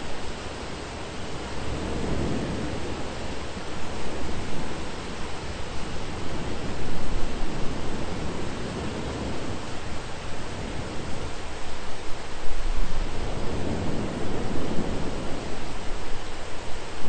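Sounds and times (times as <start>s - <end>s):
heavy rain hiss: 0.0s - 17.0s.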